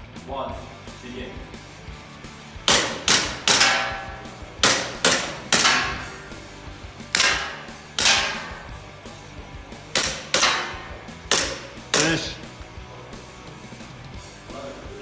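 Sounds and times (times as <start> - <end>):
pistol shots cracking: 2.7 - 6.6, 10.0 - 12.5.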